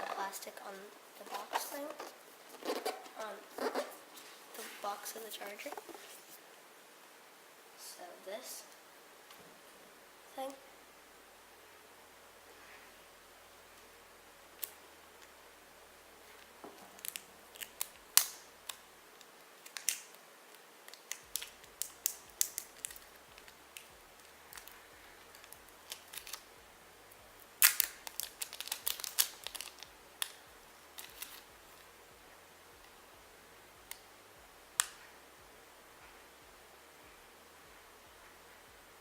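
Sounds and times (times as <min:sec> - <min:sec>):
plastic wrap crackling: 0:00.0 - 0:06.4, 0:16.2 - 0:26.5, 0:27.4 - 0:31.9.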